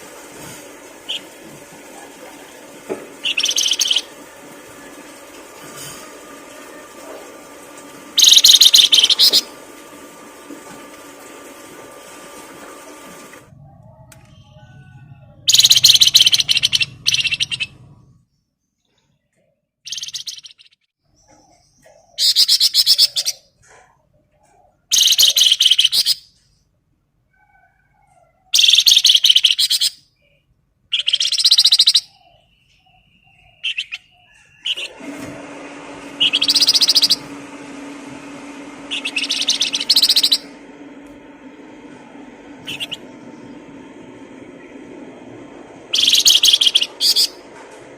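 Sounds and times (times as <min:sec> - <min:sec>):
songbird trilled chatter: 0:03.2 - 0:04.1, 0:08.2 - 0:09.4, 0:15.5 - 0:17.7, 0:39.0 - 0:40.4, 0:46.0 - 0:47.4.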